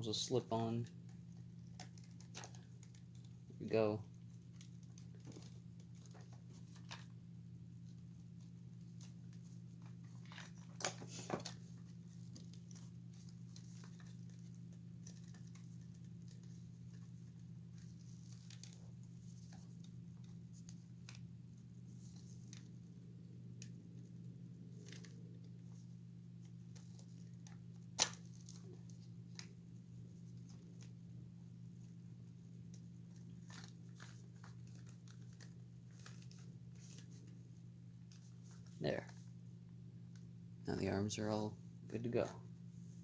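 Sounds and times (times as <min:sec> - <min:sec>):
steady low hum: 0:00.0 - 0:43.0.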